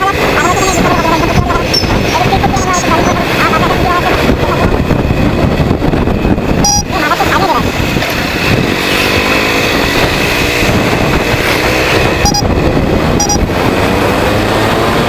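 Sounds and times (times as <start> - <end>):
motorcycle engine running: 0.0 - 15.0
wind noise on microphone: 0.0 - 15.0
short beeps: 6.6 - 7.0, 12.2 - 12.5, 13.2 - 13.5.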